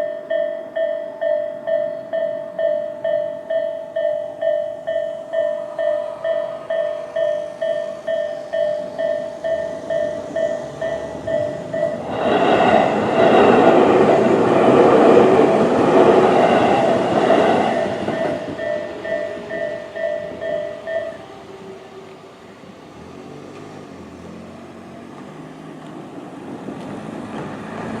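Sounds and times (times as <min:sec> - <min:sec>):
level crossing alarm bell: 0:00.0 - 0:12.2, 0:17.5 - 0:21.4
electric train passing: 0:00.0 - 0:28.0.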